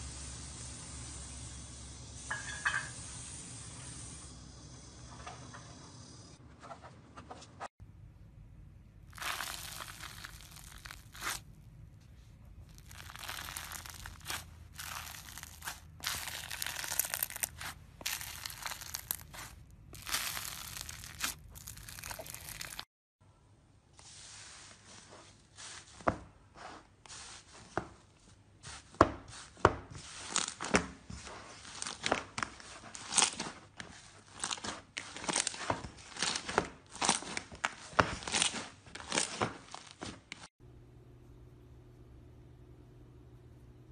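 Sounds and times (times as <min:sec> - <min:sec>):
slime crackling and tearing: 0:09.1 - 0:11.5, 0:12.7 - 0:22.9, 0:34.2 - 0:39.9.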